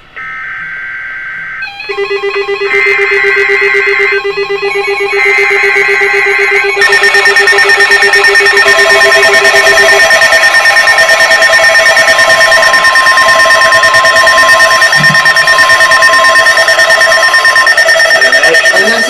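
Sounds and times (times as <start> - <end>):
pulsing alert tones: 1.6 - 19.0
higher intermittent beeps: 1.7 - 19.0
fast-pulsing low beep: 1.9 - 19.0.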